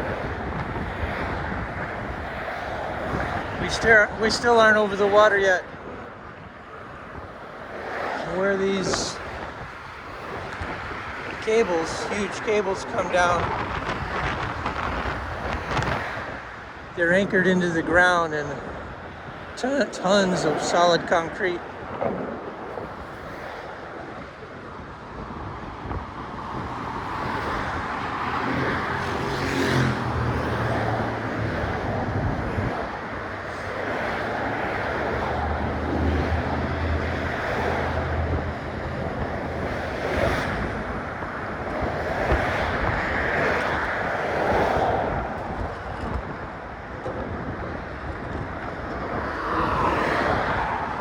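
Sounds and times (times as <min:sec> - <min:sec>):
traffic rushing past: 0:00.0 - 0:51.0
wind buffeting microphone: 0:00.0 - 0:51.0
heavy vehicle engine hum: 0:26.6 - 0:51.0.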